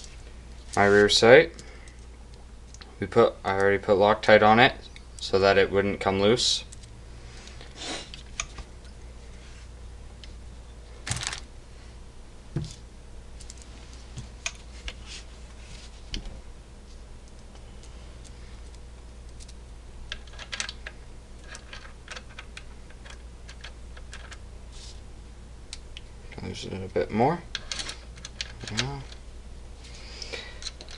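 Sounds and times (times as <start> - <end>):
faint low hum: 0.0 - 30.9
small metal parts clicking: 19.4 - 24.4, 27.5 - 29.2, 30.6 - 30.9.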